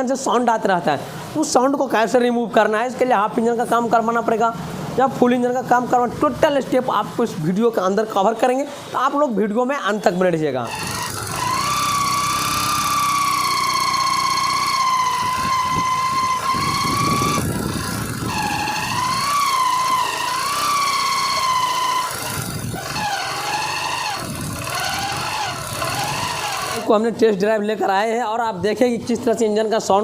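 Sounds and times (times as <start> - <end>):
high gear whine: 10.6 - 26.9
motorcycle engine running: 10.7 - 26.9.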